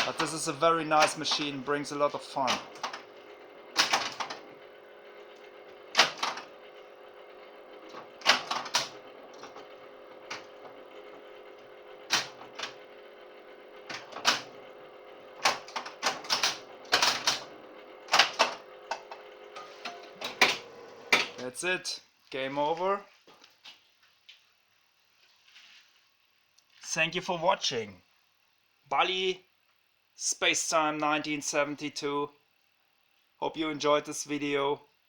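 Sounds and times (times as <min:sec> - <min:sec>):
pinball machine clacking and clicking: 0:00.0 - 0:01.7, 0:02.4 - 0:04.5, 0:05.8 - 0:06.6, 0:07.8 - 0:10.8, 0:12.0 - 0:12.9, 0:13.8 - 0:14.6, 0:15.4 - 0:21.4.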